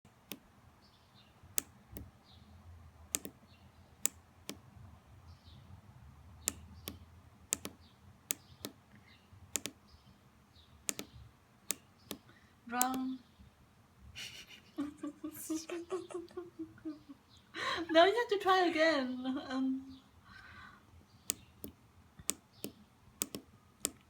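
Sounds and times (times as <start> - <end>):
morse key clicks: 3.1 - 3.4, 6.4 - 8.8, 9.5 - 9.8, 10.8 - 13.0, 21.3 - 24.0.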